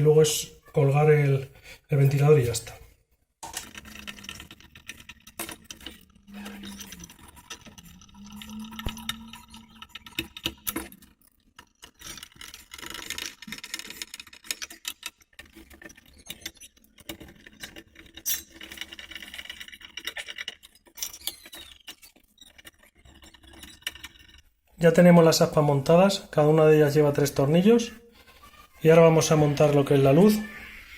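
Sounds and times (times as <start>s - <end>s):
screws and metal parts clinking: 3.4s - 24.5s.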